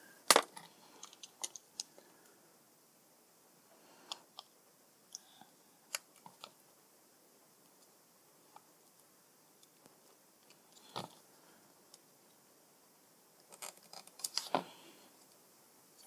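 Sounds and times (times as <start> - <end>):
plastic parts clicking: 0.3 - 2.0.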